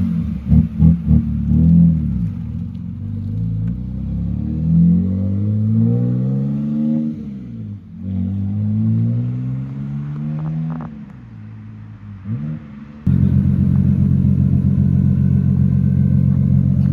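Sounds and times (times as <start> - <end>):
car engine revving: 13.1 - 16.9.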